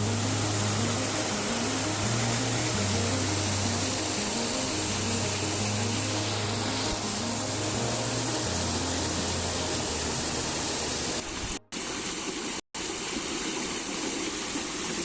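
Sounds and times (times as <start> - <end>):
low background music: 0.0 - 11.2
flowing mountain water: 0.0 - 15.0.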